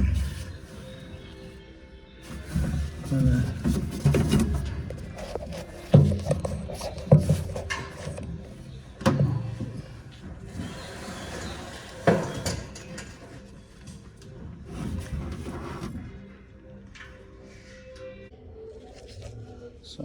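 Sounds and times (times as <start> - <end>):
rubbing and scraping: 0.0 - 1.6, 2.2 - 16.4.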